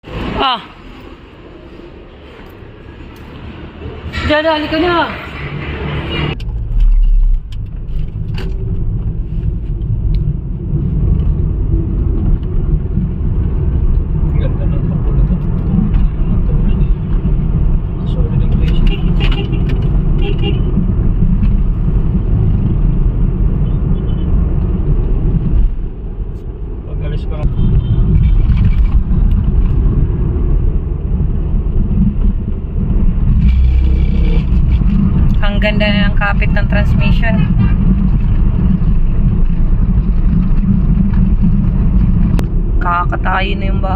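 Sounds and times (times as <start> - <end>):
engine and road rumble in car: 2.5 - 43.9.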